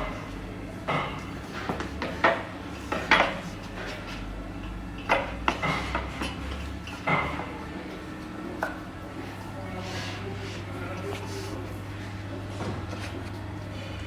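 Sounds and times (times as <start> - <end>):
low steady machine hum: 0.0 - 14.0.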